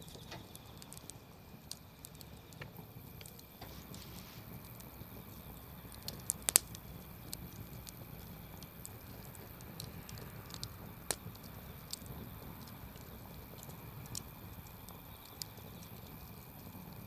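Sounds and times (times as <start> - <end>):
campfire crackling: 0.0 - 17.0.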